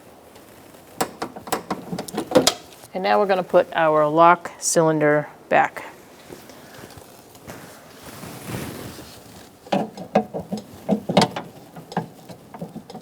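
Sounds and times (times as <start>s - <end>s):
lock cylinder clicking and rattling: 1.0s - 2.7s
soft handling noise: 6.0s - 13.0s.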